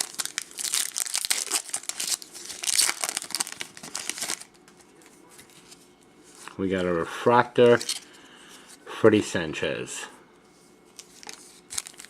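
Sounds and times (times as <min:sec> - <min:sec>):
foil wrapper crinkling and tearing: 0:00.0 - 0:04.6, 0:11.0 - 0:12.0.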